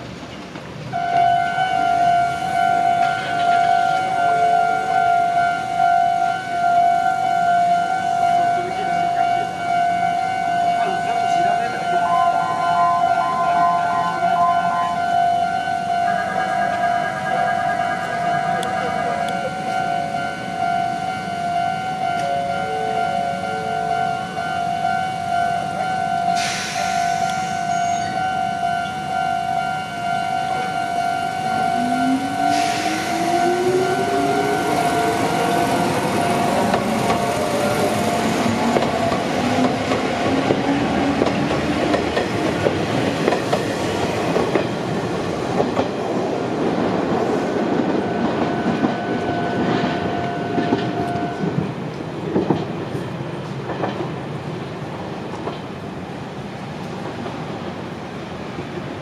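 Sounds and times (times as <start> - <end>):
train wheels rumbling on rails: 0.0 - 7.0, 13.5 - 59.0
level-crossing alarm ringing: 1.0 - 41.9, 45.8 - 51.6
electric train motor whine: 9.6 - 44.2.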